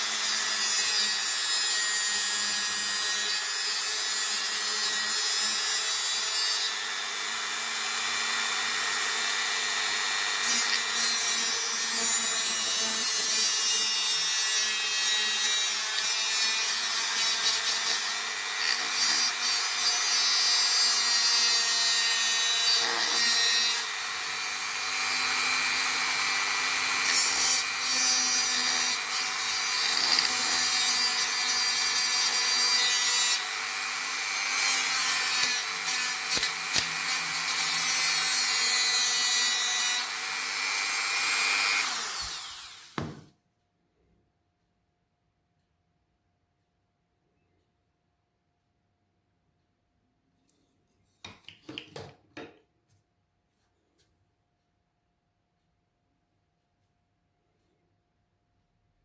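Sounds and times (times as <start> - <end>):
small power tool running: 5.2 - 13.3, 14.0 - 43.2.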